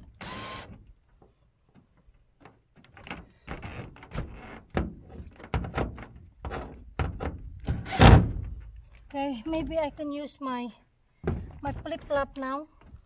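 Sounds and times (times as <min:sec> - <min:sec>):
knocks and thumps on roof panels: 0:03.0 - 0:08.6, 0:11.2 - 0:12.3.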